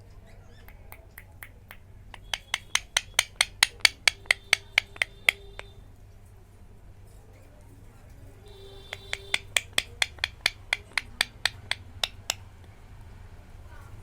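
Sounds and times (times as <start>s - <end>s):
rapid sharp clicks: 0.7s - 5.8s, 8.8s - 12.7s.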